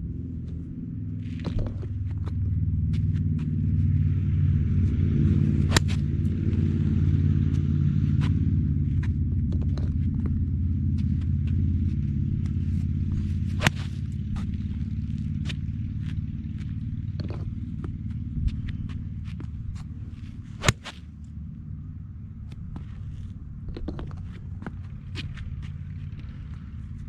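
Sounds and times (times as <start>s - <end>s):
low rumble: 0.0s - 27.0s
golf club striking ball: 5.3s - 6.9s, 9.0s - 21.4s.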